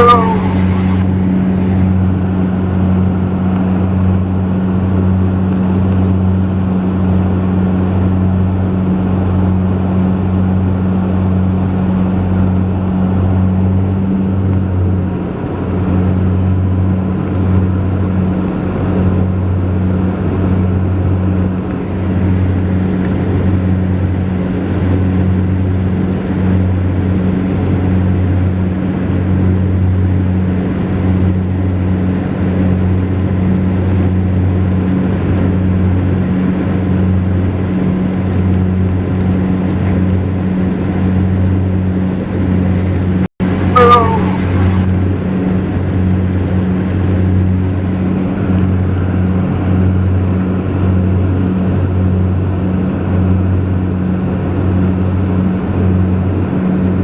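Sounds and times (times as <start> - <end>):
propeller engines droning: 0.0 - 1.0, 43.4 - 44.9.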